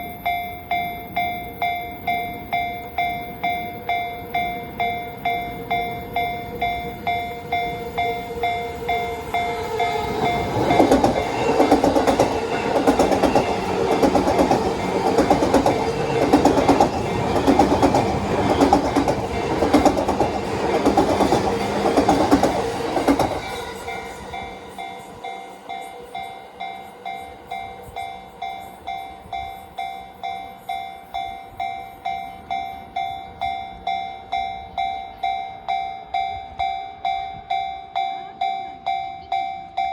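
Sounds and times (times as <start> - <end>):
level crossing bell ringing: 0.3 - 21.9
train wheels clacking over rail joints: 7.5 - 24.4.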